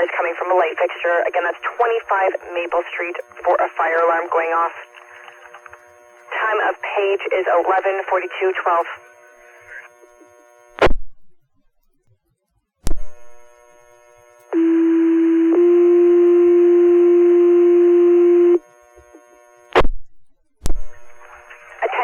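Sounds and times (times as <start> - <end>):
radio clicks: 0.0 - 10.2
two-tone pager tone: 14.6 - 18.6.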